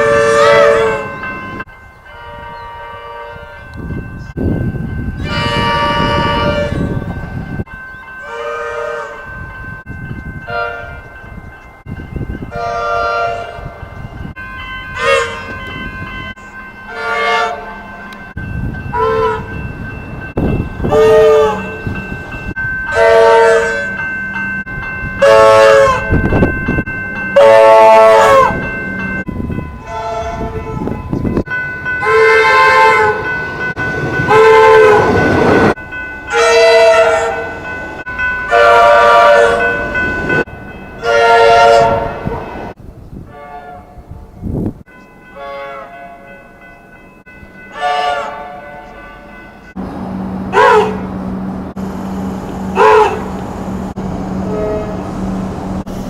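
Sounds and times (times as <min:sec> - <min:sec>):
electric train horn blasts: 0:00.0 - 0:03.8, 0:05.2 - 0:07.1, 0:08.2 - 0:09.4, 0:10.5 - 0:11.1, 0:12.5 - 0:18.2, 0:18.9 - 0:19.6, 0:20.8 - 0:21.8, 0:22.9 - 0:24.0, 0:25.2 - 0:26.5, 0:27.4 - 0:28.8, 0:29.8 - 0:31.2, 0:32.0 - 0:33.4, 0:34.2 - 0:35.7, 0:36.3 - 0:37.6, 0:38.5 - 0:39.9, 0:41.0 - 0:42.7, 0:43.3 - 0:44.0, 0:47.7 - 0:55.3.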